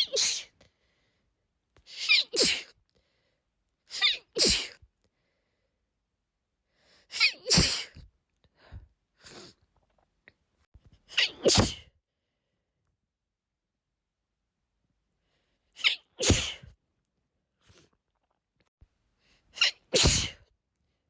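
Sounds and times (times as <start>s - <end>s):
woman sneezing: 0.0s - 0.6s, 1.9s - 2.8s, 3.9s - 4.8s, 7.1s - 8.0s, 11.1s - 11.9s, 15.8s - 16.7s, 19.6s - 20.5s.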